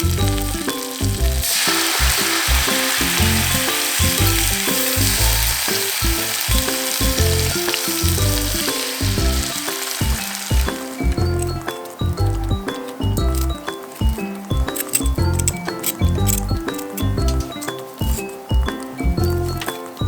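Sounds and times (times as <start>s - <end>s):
food sizzling in a pan: 0.0s - 11.7s
background music: 0.0s - 20.0s.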